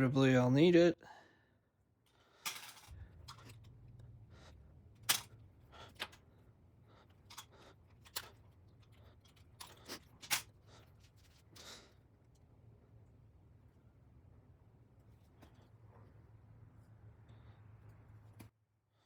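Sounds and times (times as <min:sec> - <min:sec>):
wire strippers snipping: 0:05.0 - 0:05.4.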